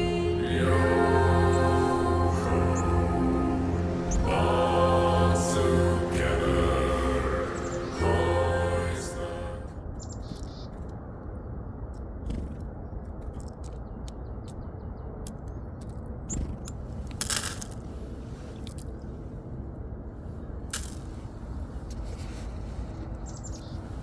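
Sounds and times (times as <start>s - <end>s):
low wind rumble: 0.0s - 24.0s
small birds chirping: 9.9s - 10.9s, 12.2s - 17.0s, 22.9s - 24.0s
rustling: 20.7s - 24.0s.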